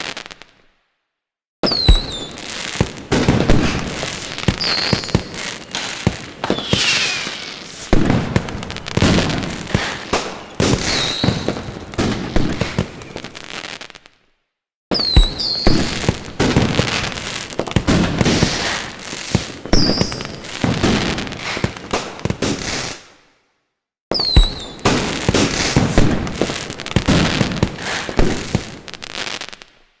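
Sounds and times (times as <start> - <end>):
fireworks bangs and crackling: 0.0 - 0.7, 1.6 - 14.2, 14.9 - 23.3, 24.1 - 30.0
high falling whistles: 4.6 - 8.1.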